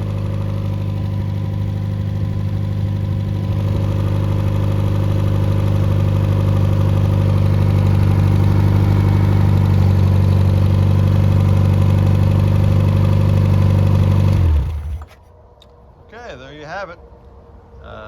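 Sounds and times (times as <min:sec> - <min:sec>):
car engine running steadily: 0:00.0 - 0:15.2.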